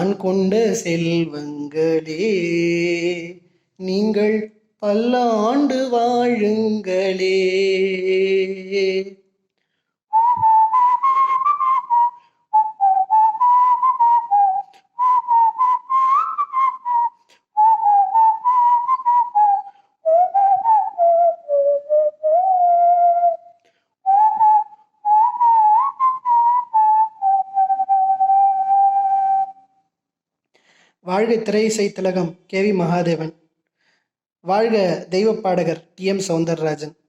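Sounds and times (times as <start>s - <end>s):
person whistling a melody: 10.1s - 29.8s.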